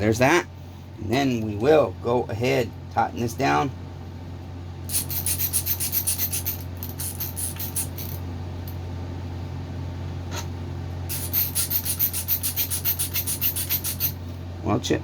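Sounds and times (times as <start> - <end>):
steady low hum: 0.0 - 15.0
hand tool ratchet clicking: 4.9 - 8.2, 11.1 - 14.2.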